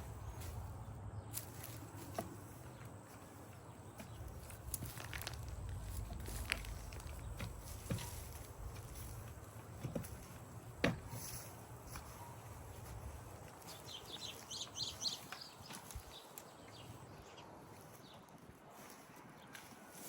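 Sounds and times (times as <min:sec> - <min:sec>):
scraping and rustling mulch: 0:00.0 - 0:20.0.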